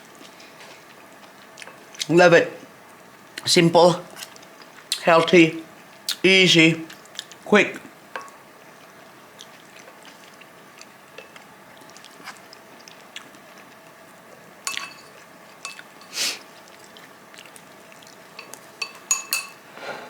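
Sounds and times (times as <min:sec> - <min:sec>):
tableware clinking: 0:14.7 - 0:16.2, 0:18.4 - 0:19.6.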